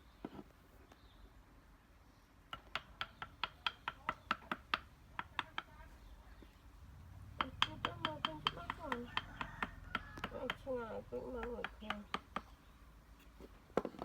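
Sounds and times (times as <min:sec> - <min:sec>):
sharp taps on wood: 0:07.4 - 0:10.7.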